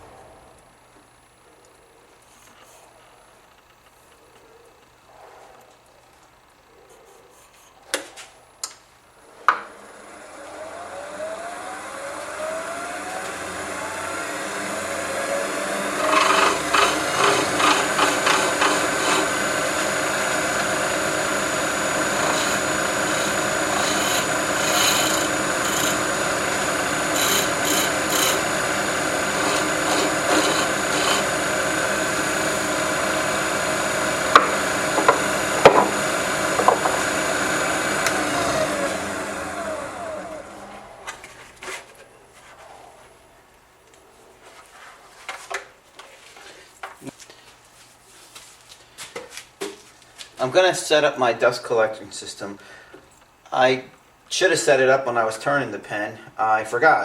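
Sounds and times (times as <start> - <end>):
wood lathe whine: 9.5 - 41.3
turning tool rasping scrape: 13.2 - 37.1.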